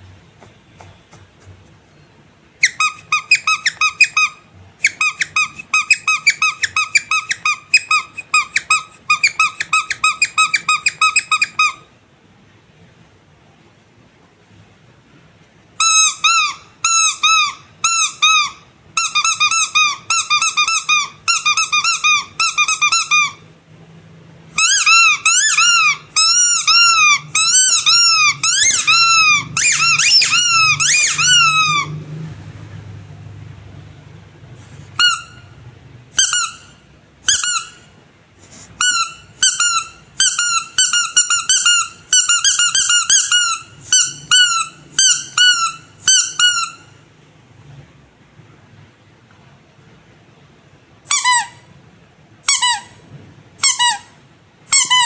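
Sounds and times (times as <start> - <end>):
squeaky rubber toy squeaking: 2.6 - 11.9, 15.8 - 23.5, 24.5 - 32.0, 34.8 - 37.9, 38.7 - 47.0, 51.0 - 51.7, 52.4 - 53.0, 53.6 - 55.0.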